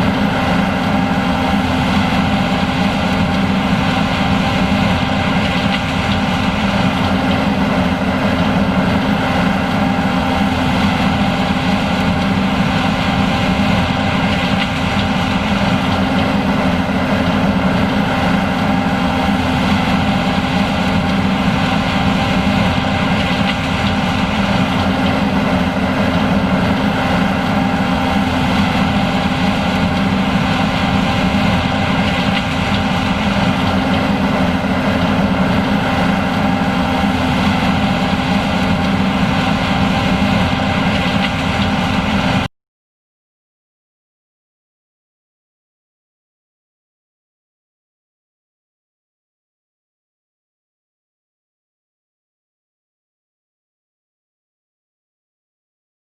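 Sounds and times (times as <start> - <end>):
combine harvester droning: 0.0 - 42.5.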